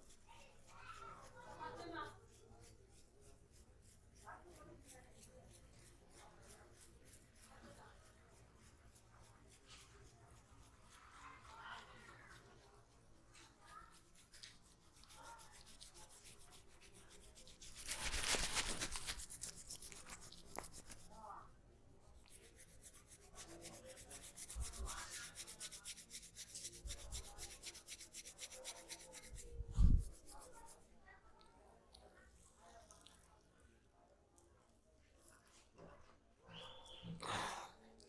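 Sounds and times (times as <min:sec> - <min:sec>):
hands rubbing hair: 0:13.3 - 0:21.2, 0:22.2 - 0:30.8.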